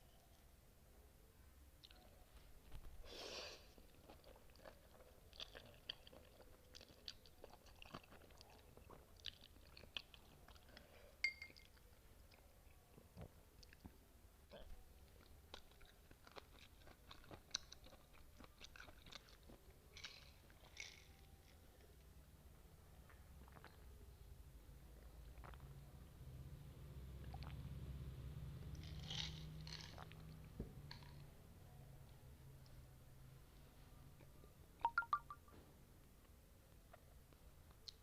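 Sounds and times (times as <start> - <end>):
wet chewing and crunching: 3.8 - 10.9, 14.5 - 21.9, 25.3 - 25.7, 28.7 - 31.3.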